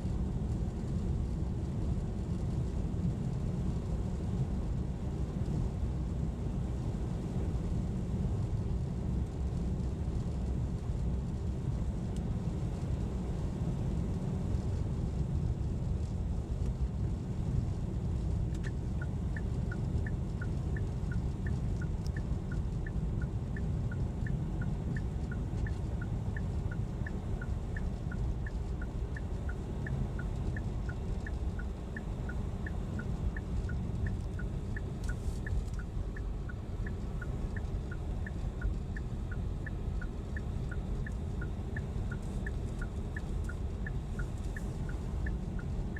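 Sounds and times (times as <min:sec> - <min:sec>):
low engine and road rumble: 0:00.0 - 0:45.9
turn signal ticking: 0:18.1 - 0:45.9.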